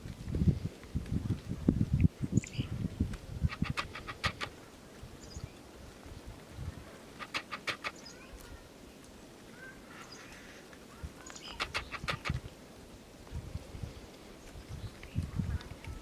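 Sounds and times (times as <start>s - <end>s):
birds harsh calls: 3.4s - 5.6s, 6.9s - 8.7s, 9.6s - 12.4s
faint thin bird calls: 3.4s - 5.6s, 6.9s - 12.5s.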